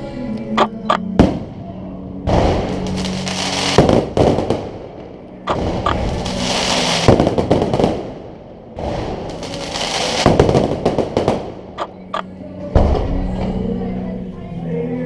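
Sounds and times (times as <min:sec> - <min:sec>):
fireworks bursts: 0:02.3 - 0:12.2.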